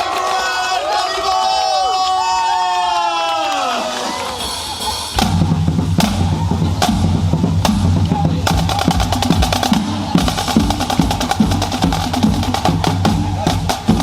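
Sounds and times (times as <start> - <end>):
fast rapid drumming: 4.1 - 14.0
drum-heavy music with bass line: 4.2 - 14.0
strong drum hits: 4.4 - 14.0.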